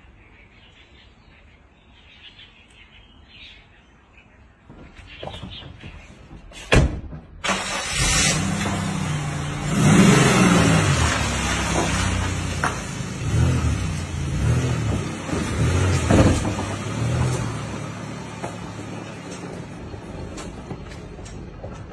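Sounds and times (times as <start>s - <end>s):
car engine starting and revving: 7.4s - 21.9s.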